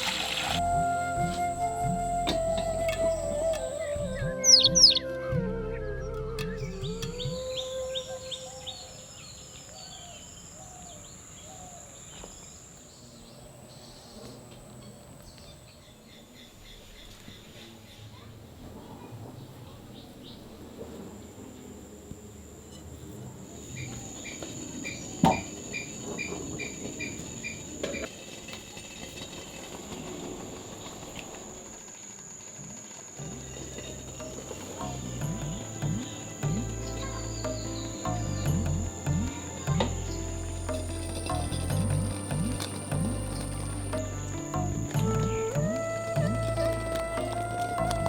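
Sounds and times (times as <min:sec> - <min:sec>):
low warbling bird calls: 0:00.0 - 0:12.0, 0:33.4 - 0:48.0
birds chirping: 0:00.0 - 0:17.8, 0:33.4 - 0:48.0
crickets droning: 0:06.6 - 0:18.3, 0:19.3 - 0:48.0
high-pitched insect buzz: 0:34.8 - 0:48.0
quick insect chirp: 0:39.0 - 0:45.5.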